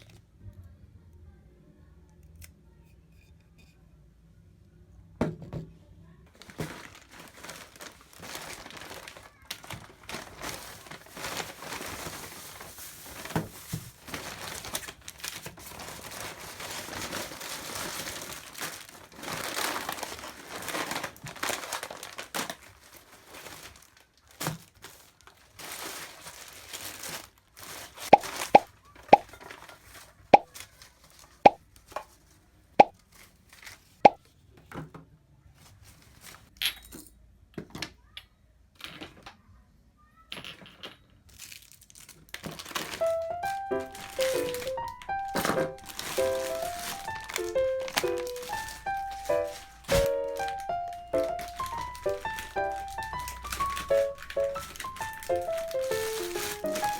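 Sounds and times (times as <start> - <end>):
packaging rustling: 6.3 - 34.1, 41.3 - 56.9.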